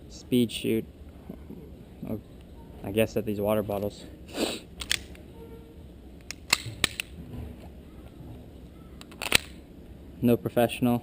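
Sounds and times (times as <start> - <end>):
airsoft pistol clicks and knocks: 4.8 - 5.2, 6.2 - 7.2.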